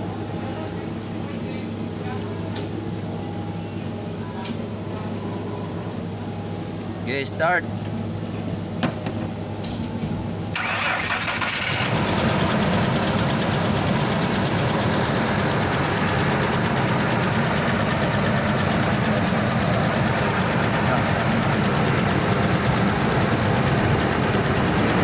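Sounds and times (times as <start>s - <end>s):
engine running steadily: 0.0s - 25.0s
engine cranking: 10.6s - 12.1s.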